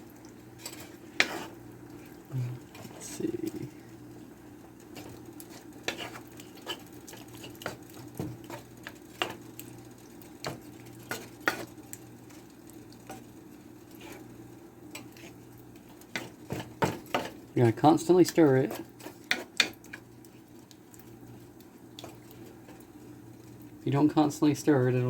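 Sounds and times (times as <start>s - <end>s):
utensil scraping a pan: 0.6s - 1.6s, 5.0s - 9.4s, 10.5s - 11.8s, 13.9s - 14.3s, 14.9s - 17.4s, 18.1s - 20.0s.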